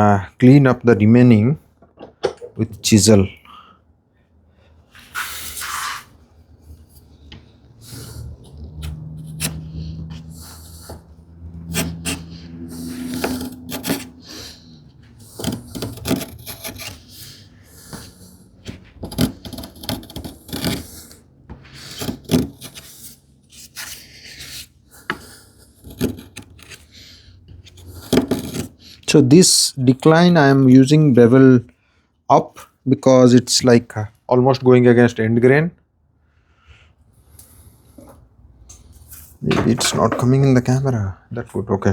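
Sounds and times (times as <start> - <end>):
wood chisel scraping: 5.0 - 6.2, 6.8 - 30.5, 37.7 - 40.5.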